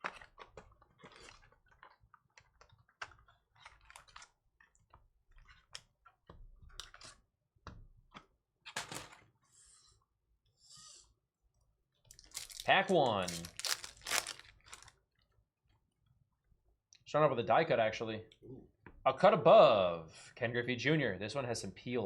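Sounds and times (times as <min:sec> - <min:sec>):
cardboard box and foil packs handled: 0:12.1 - 0:15.0
foil crinkle: 0:12.2 - 0:14.9.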